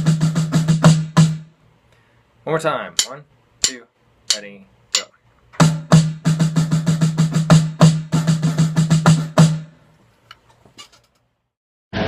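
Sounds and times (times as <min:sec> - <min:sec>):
snare drum played fast: 0:00.0 - 0:01.4, 0:03.0 - 0:09.7.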